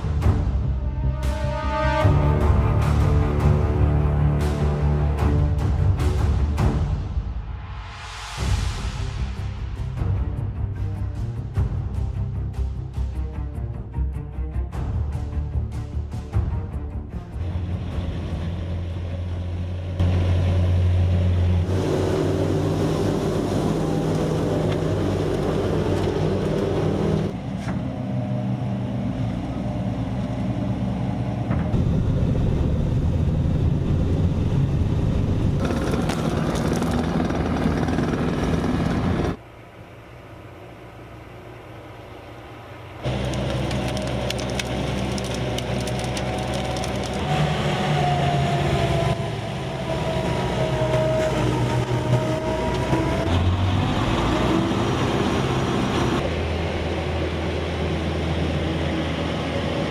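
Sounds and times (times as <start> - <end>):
vehicle engines running: 15.1 - 59.9.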